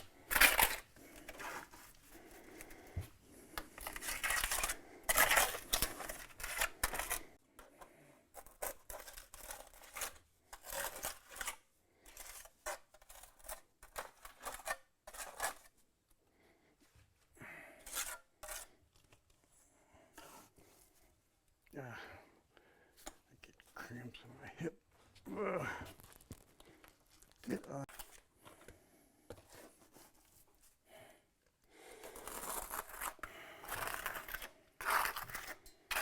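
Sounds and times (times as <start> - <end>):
trowel scraping mortar on brick: 0.0 - 2.0, 3.8 - 7.4, 8.3 - 15.8, 17.8 - 18.8, 32.0 - 36.0.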